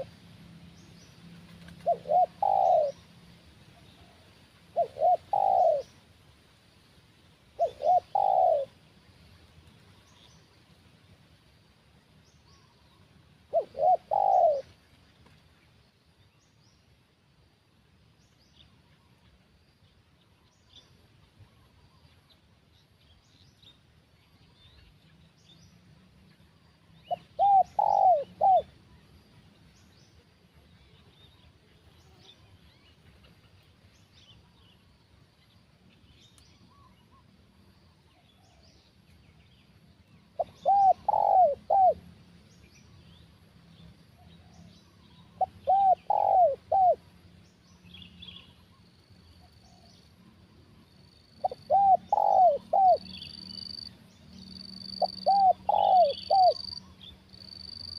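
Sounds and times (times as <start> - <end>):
dove cooing: 1.8 - 3.1, 3.8 - 6.0, 7.6 - 8.8, 13.5 - 14.8, 27.1 - 28.8, 40.4 - 42.0, 45.4 - 47.0, 51.4 - 53.9, 55.0 - 56.8
faint high chirping: 50.8 - 57.9.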